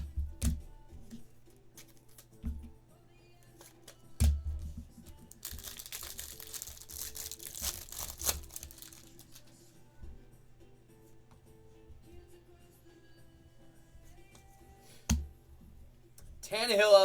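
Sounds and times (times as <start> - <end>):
wrapper crinkling: 5.2 - 9.6.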